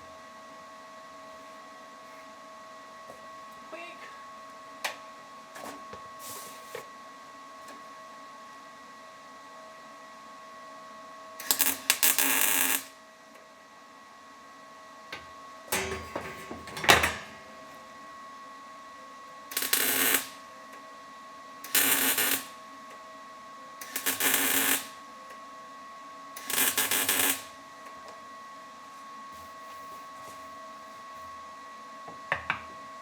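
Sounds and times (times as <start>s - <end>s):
crackling tack welds: 11.4s - 12.9s, 19.5s - 20.4s, 21.6s - 22.6s, 23.8s - 25.0s, 26.4s - 27.5s.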